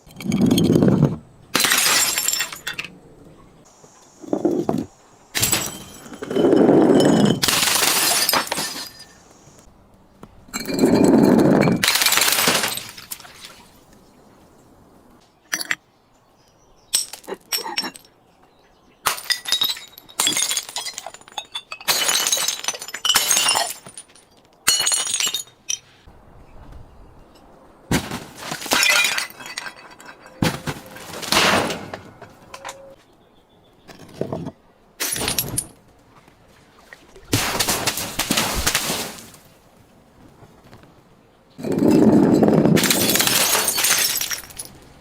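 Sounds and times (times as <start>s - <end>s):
glass bottles breaking: 1.5s - 2.9s, 5.4s - 9.3s, 10.6s - 13.5s, 16.9s - 18.1s, 19.0s - 25.8s, 27.9s - 32.9s, 35.0s - 35.8s, 41.6s - 44.8s.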